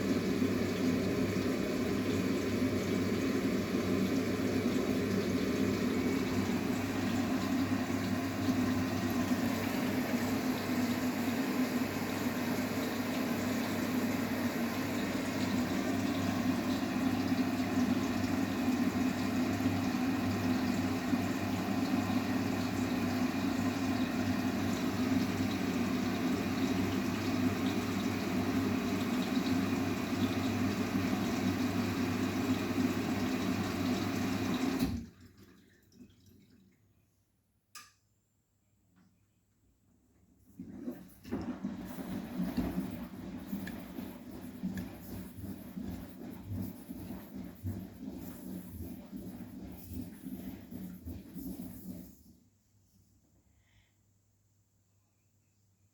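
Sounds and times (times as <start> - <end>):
water rushing into washing machine: 0.0 - 37.2, 40.3 - 52.5
washing machine hum: 0.0 - 37.5, 39.6 - 53.9
faint click: 37.7 - 38.0.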